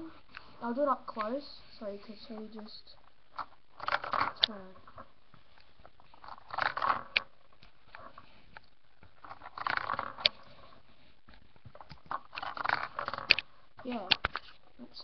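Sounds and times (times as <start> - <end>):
plastic clattering and crunching: 3.1 - 14.7.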